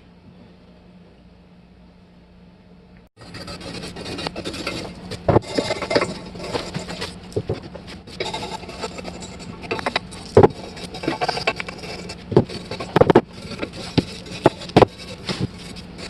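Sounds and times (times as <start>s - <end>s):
low hum: 0.0s - 16.0s
rough scraping and rubbing: 3.2s - 16.0s.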